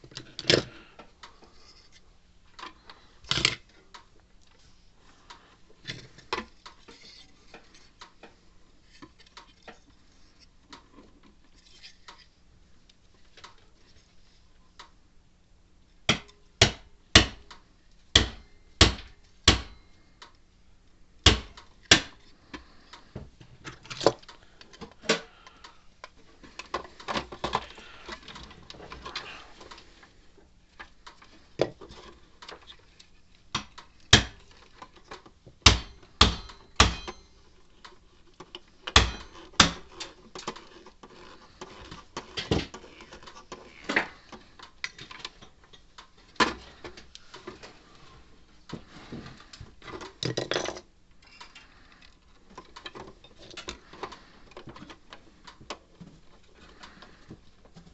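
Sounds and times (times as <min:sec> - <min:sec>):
tools and parts clicking and knocking: 0:00.0 - 0:04.1, 0:30.7 - 0:47.7, 0:49.8 - 0:57.8.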